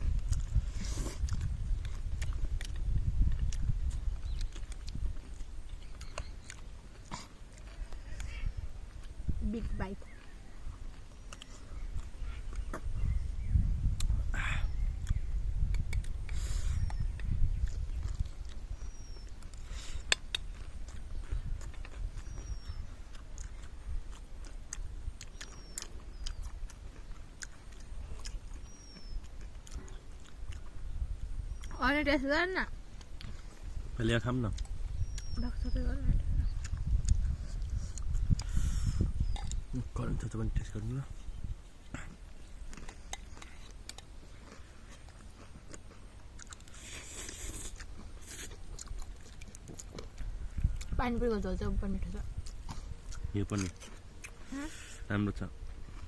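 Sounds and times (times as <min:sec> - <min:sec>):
chewing crunchy snacks: 0:00.0 - 0:13.1, 0:14.0 - 0:30.9, 0:32.9 - 0:35.6, 0:36.4 - 0:56.0.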